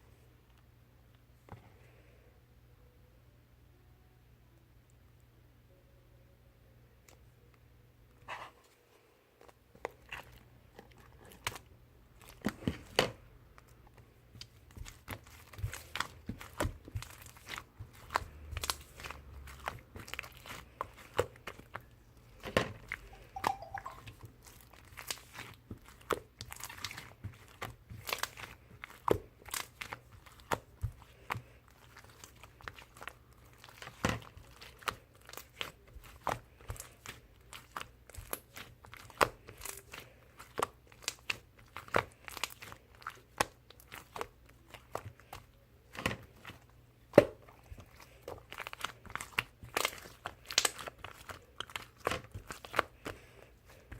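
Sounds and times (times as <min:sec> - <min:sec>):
slime popping and crackling: 0:22.4 - 0:53.1.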